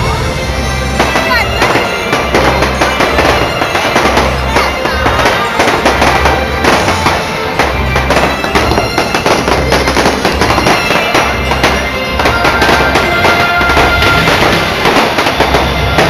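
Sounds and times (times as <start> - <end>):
show music with pulsing bass: 0.0 - 1.8
fireworks bursting and crackling: 0.0 - 16.0.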